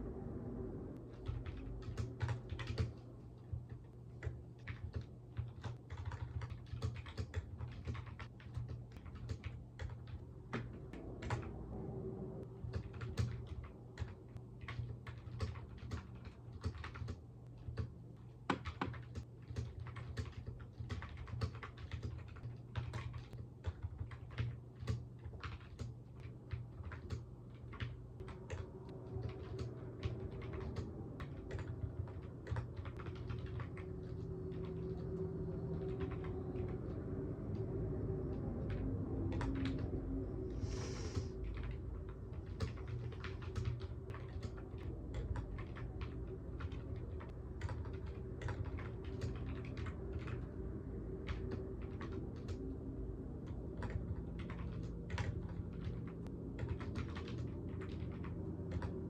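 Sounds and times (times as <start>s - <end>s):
steady low hum: 0.0s - 59.0s
keyboard typing: 1.0s - 11.6s, 12.4s - 40.1s, 41.2s - 52.8s, 53.4s - 59.0s.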